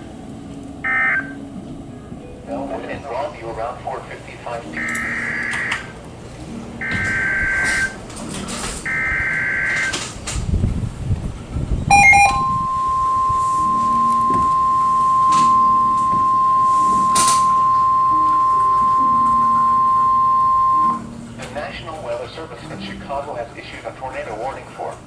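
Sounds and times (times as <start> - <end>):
steady warning alarm tone: 0.8 - 1.4, 4.6 - 5.9, 6.7 - 8.1, 8.8 - 10.0, 11.9 - 21.2
two-tone digital data burst: 11.9 - 21.0
click: 15.3 - 16.3.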